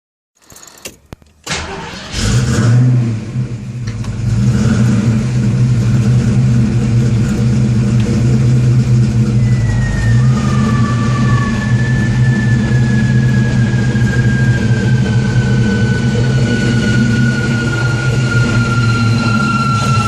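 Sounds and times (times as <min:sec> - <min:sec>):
car engine drone: 0:00.4 - 0:20.0
thin high whine: 0:09.2 - 0:20.0.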